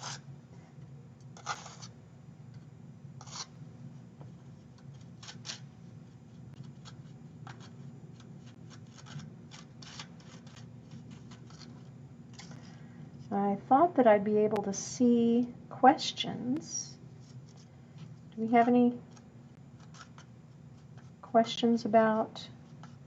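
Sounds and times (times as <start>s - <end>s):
knife scraping paste: 0.0s - 0.3s, 1.4s - 2.0s, 3.2s - 3.6s, 4.7s - 13.3s, 19.8s - 21.2s, 22.6s - 23.0s
steady low hum: 0.0s - 23.0s.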